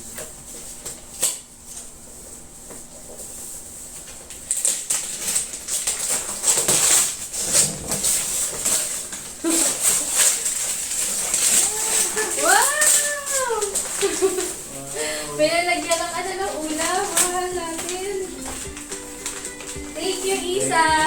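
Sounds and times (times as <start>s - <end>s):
paper and plastic rustling and ripping: 0.1s - 21.0s.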